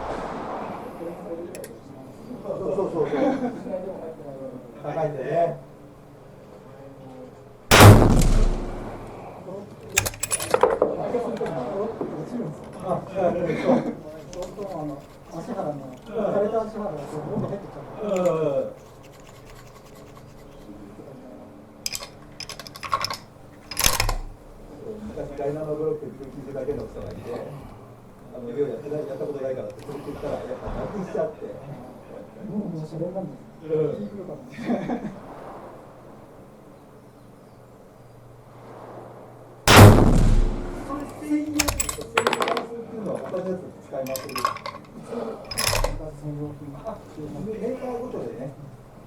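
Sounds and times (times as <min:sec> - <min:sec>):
rifle shot with reverberation: 0:07.7 - 0:09.2, 0:39.7 - 0:41.8
sharp metallic clicks: 0:07.7 - 0:09.2, 0:09.9 - 0:10.6, 0:21.9 - 0:24.4, 0:39.7 - 0:42.1
scratching and rustling handling noise: 0:12.7 - 0:21.2, 0:21.8 - 0:28.0.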